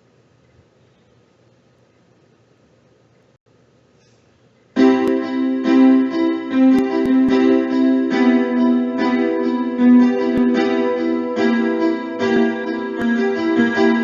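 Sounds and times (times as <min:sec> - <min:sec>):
electronic keyboard piano chords: 0:04.8 - 0:14.0.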